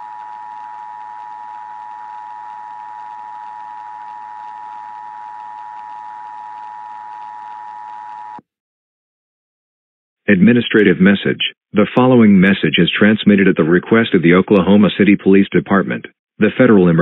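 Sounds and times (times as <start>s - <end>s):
static hiss: 0.0s - 8.4s
two-tone alarm: 0.0s - 8.4s.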